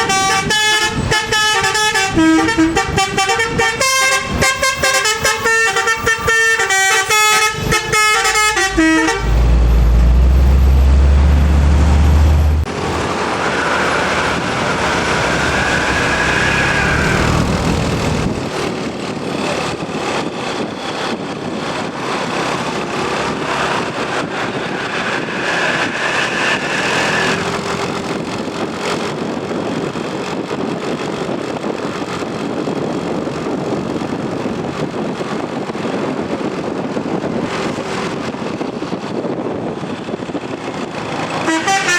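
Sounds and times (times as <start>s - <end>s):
multi-tone bus horn melody: 0.0s - 10.1s, 41.3s - 41.9s
road traffic with vehicles passing: 0.0s - 41.9s.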